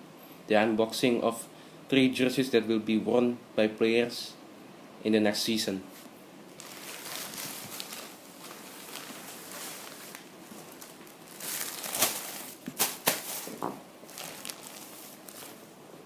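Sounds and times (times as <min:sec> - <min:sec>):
packaging and cloth rustling: 0:06.5 - 0:15.7.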